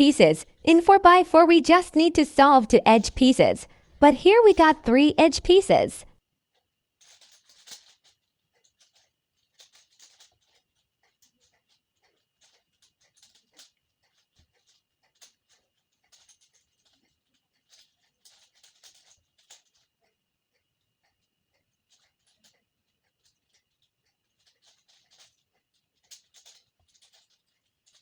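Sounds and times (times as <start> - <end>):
puzzle cube plastic layers clicking: 7.0 - 20.0, 21.8 - 28.0.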